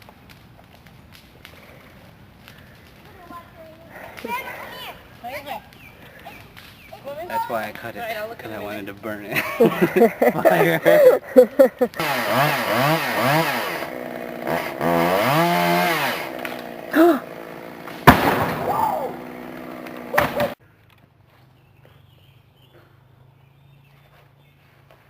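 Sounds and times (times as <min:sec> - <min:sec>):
chainsaw engine revving: 0:09.4 - 0:20.6.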